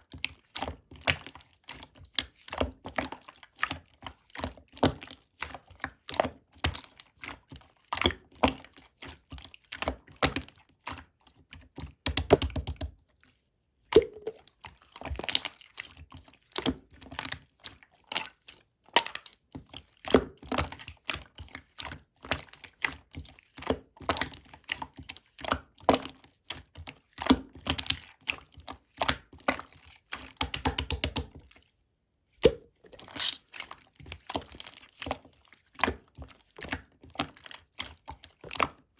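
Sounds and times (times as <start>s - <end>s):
slime crackling and popping: 33.2s - 33.5s.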